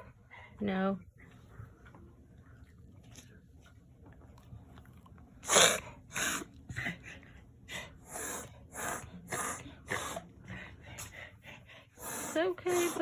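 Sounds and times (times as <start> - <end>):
pet coughing and hacking: 5.4 - 7.0.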